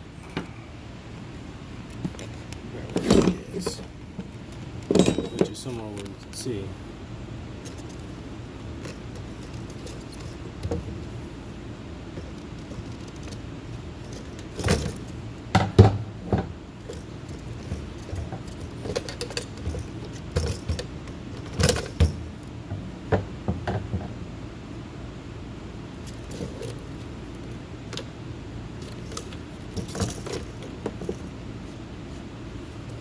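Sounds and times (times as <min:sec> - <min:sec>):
steady low hum: 0:00.0 - 0:33.0
tools and parts clicking and knocking: 0:01.9 - 0:06.2, 0:14.1 - 0:24.1, 0:28.8 - 0:31.3.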